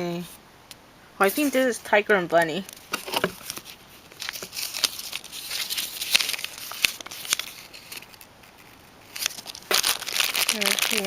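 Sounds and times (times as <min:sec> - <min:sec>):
plastic packaging crinkling: 0:02.5 - 0:11.0.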